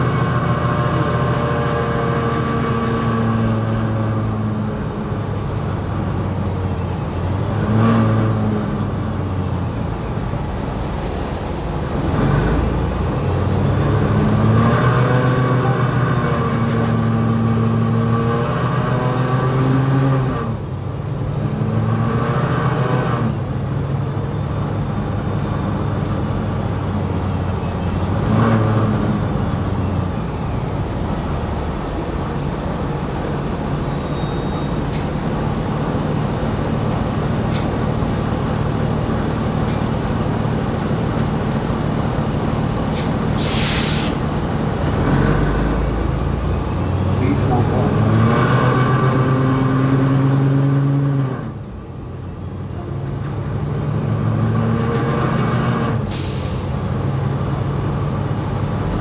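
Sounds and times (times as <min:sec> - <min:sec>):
bus engine pulling away: 0:00.0 - 0:59.0
air hiss: 0:43.3 - 0:44.3.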